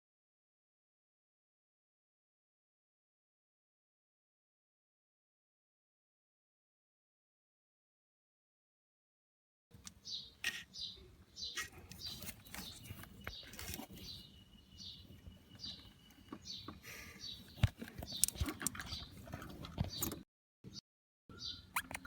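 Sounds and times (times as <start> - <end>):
small bird chirping: 9.9 - 22.0.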